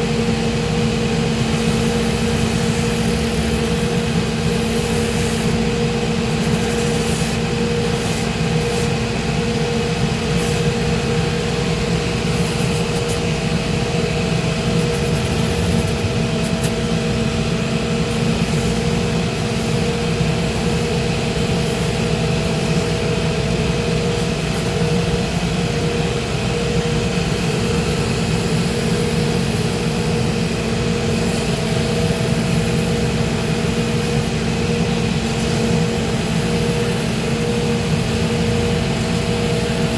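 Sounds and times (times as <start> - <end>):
motor hum: 10.6 - 19.0
rough grinding noise: 14.7 - 17.0.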